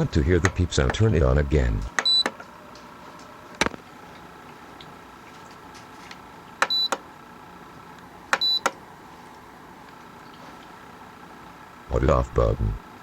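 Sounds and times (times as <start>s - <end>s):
button clicks: 8.3s - 8.8s.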